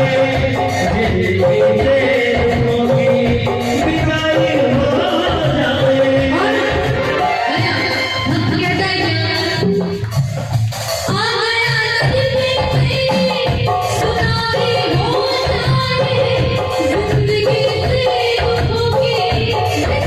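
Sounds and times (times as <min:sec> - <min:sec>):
person singing: 0:00.0 - 0:09.9
instrumental accompaniment: 0:00.0 - 0:20.0
steady drum beat: 0:00.0 - 0:20.0.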